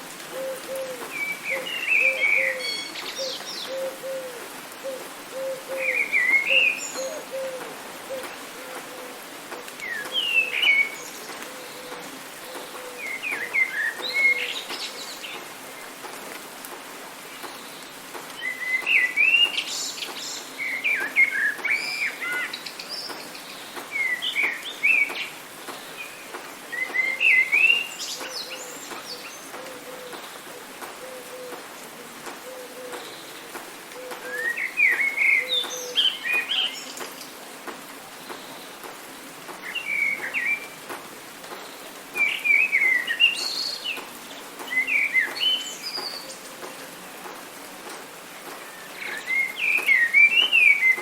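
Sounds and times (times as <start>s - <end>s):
rain hissing: 0.0s - 51.0s
songbirds chirping: 0.0s - 51.0s.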